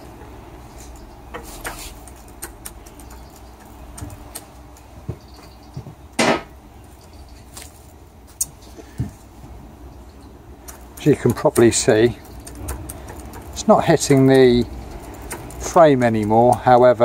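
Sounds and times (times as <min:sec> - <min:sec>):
metal bicycle parts clicking: 0:10.2 - 0:17.0.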